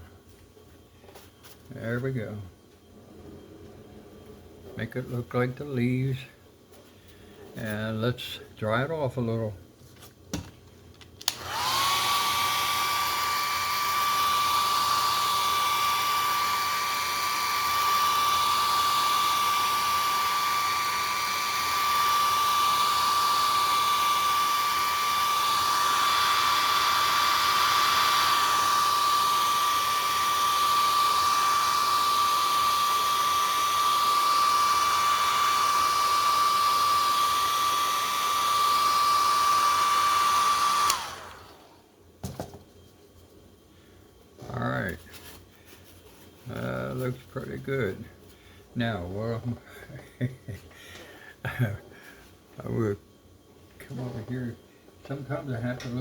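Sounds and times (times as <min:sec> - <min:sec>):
hair dryer motor whine: 0:11.2 - 0:41.8.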